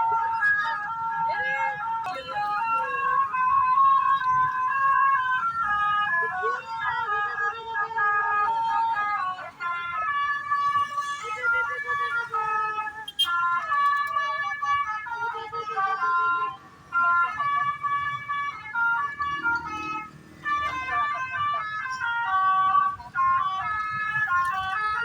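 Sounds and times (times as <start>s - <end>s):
musical air horns playing tune: 10.0s - 13.7s.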